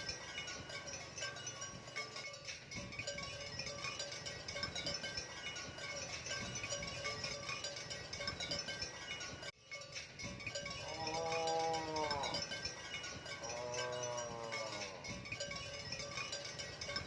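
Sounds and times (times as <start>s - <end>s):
cow mooing: 10.8s - 12.5s, 13.4s - 15.0s.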